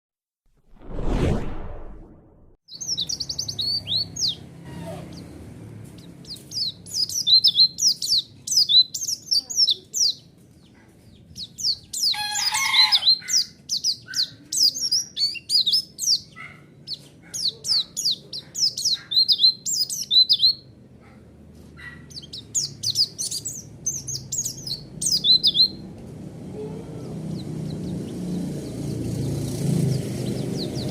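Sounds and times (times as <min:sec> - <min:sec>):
bird twittering: 0:02.7 - 0:05.4, 0:06.0 - 0:20.6, 0:21.8 - 0:25.8
harsh bird call: 0:11.4 - 0:20.5.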